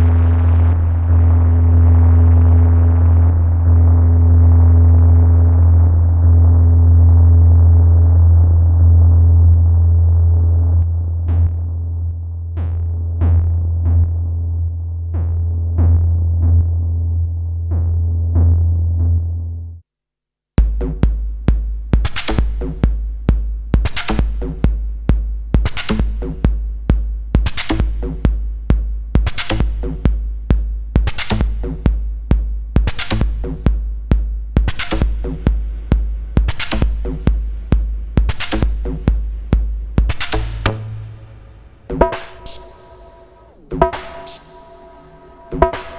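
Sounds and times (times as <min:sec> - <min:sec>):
heavy low synth drone: 0:00.0 - 0:19.4, 0:40.4 - 0:45.9
electronic percussion pattern: 0:41.9 - 0:45.9.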